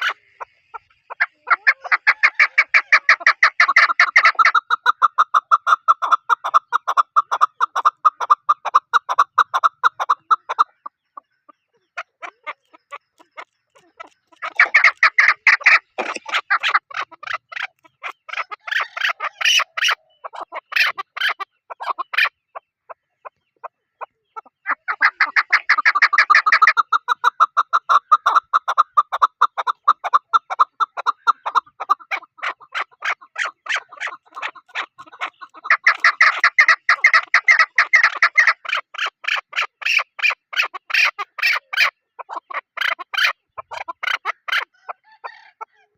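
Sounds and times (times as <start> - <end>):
bird calling rapid notes: 12.4 - 22.3, 24.7 - 41.9.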